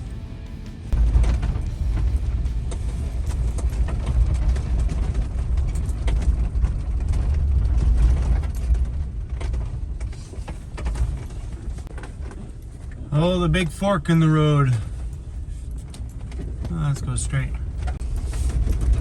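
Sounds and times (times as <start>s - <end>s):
van rumbling on gravel road: 0.0s - 19.0s
knocks and rattles from bumps: 0.9s - 13.4s.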